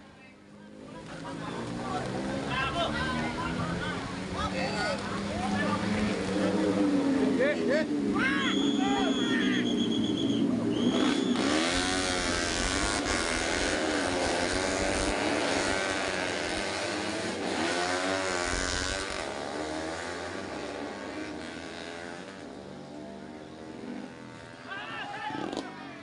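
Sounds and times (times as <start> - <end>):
motorcycles racing through gears: 0.5 - 26.0.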